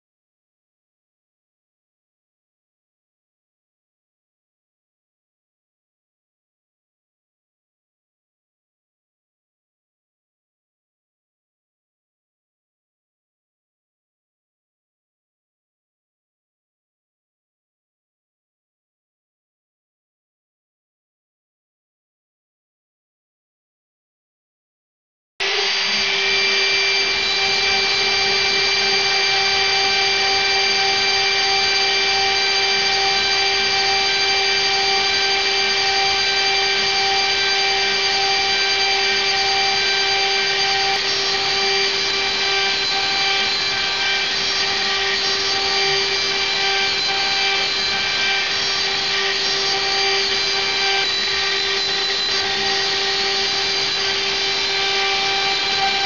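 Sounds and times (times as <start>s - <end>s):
power tool whine: 25.4s - 56.0s.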